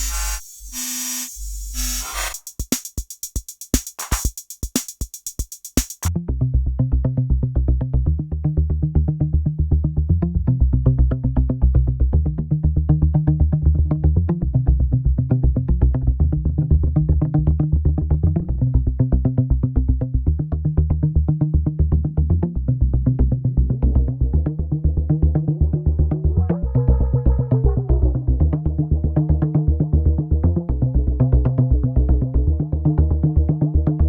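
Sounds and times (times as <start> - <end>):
bright synth loop: 0.0 - 2.8
muffled bass-heavy pulsing loop: 0.0 - 3.1, 3.8 - 34.0
sharp clicky drum hits: 2.3 - 6.1.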